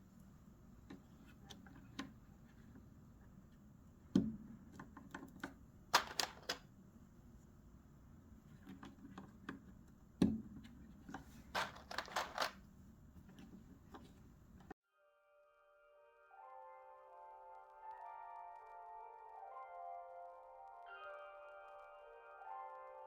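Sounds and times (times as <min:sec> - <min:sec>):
mechanical keyboard clicks: 0:06.0 - 0:06.6, 0:11.6 - 0:12.6.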